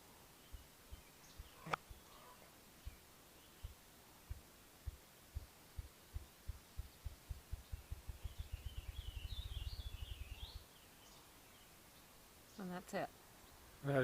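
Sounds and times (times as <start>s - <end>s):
small songbird singing: 0.2s - 13.8s
grouse drumming thumps: 3.6s - 10.2s.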